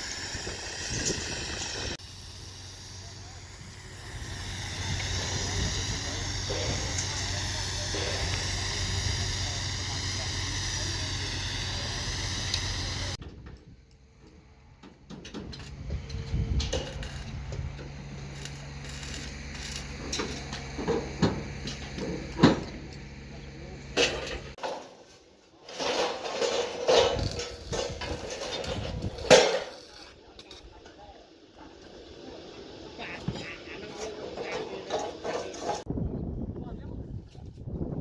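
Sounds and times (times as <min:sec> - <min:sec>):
excavator engine humming: 0:00.0 - 0:13.2, 0:17.3 - 0:24.6, 0:30.2 - 0:35.9
bucket scraping stone and soil: 0:24.6 - 0:30.0.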